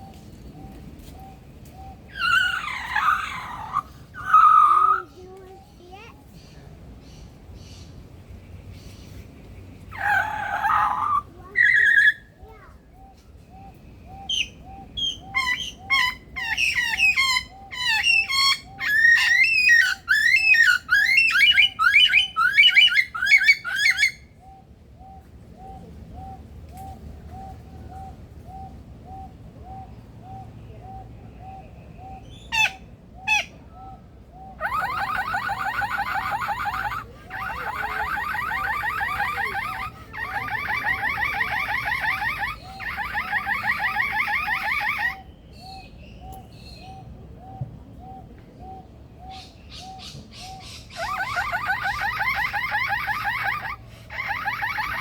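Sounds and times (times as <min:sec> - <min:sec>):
lyrebird whistles and chirps: 0:13.0 - 0:55.0
bird imitating car alarm: 0:34.6 - 0:45.2.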